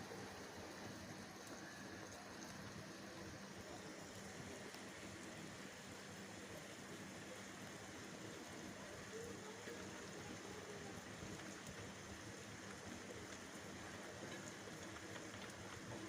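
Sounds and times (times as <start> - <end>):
steady rain falling: 0.0 - 16.0
raindrop ticks: 1.4 - 2.8, 4.1 - 5.4, 9.1 - 16.0.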